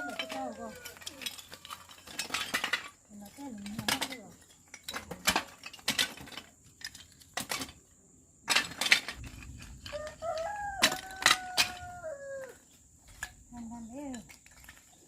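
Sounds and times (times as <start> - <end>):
rooster crowing: 0.0 - 1.2, 9.8 - 12.6.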